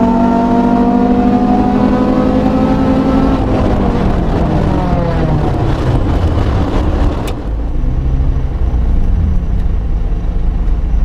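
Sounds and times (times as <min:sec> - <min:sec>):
car engine revving: 0:00.0 - 0:10.8
wind rushing: 0:02.8 - 0:09.6.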